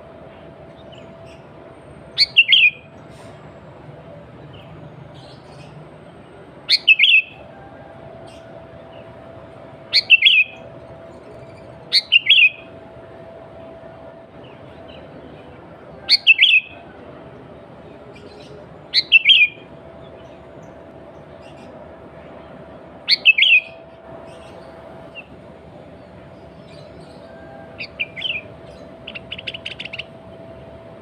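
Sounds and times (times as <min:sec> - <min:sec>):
faint steady hum: 0:00.0 - 0:31.0
bulbul singing: 0:00.8 - 0:03.0, 0:06.7 - 0:07.5, 0:09.8 - 0:12.8, 0:16.1 - 0:16.8, 0:18.1 - 0:21.8, 0:23.0 - 0:25.4, 0:26.0 - 0:30.3.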